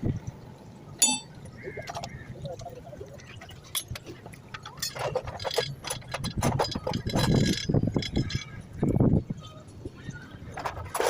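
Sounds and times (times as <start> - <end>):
low steady hum: 0.0 - 5.0
light clinks and knocks: 1.0 - 1.3.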